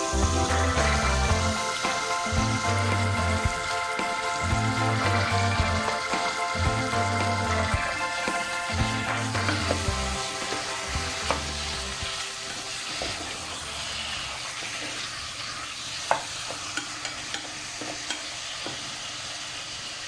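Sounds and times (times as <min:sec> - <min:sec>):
food sizzling in a pan: 0:00.0 - 0:20.0
utensil scraping a pan: 0:07.3 - 0:18.8.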